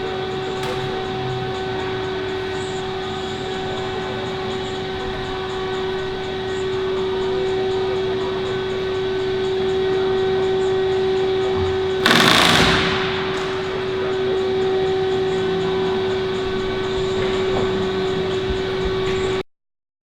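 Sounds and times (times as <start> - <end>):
steady mechanical drone: 0.0 - 19.4
loud rushing noise: 12.0 - 15.4.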